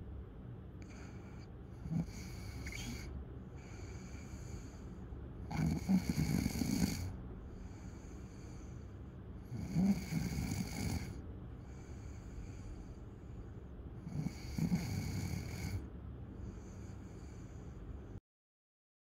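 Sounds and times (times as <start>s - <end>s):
snoring: 0.8s - 4.8s, 5.5s - 8.7s, 9.4s - 12.7s, 14.0s - 15.9s.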